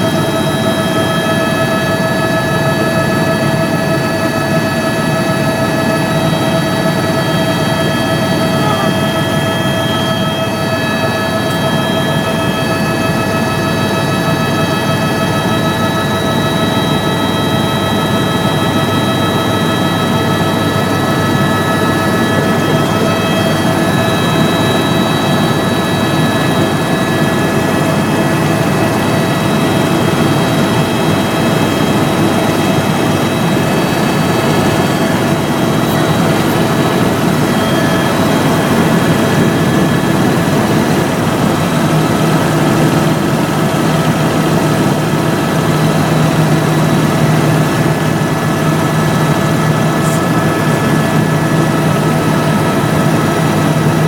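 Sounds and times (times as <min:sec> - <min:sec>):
helicopter engine and rotor drone: 0:00.0 - 0:54.0
high steady whine: 0:00.0 - 0:54.0
low hum: 0:17.8 - 0:41.4.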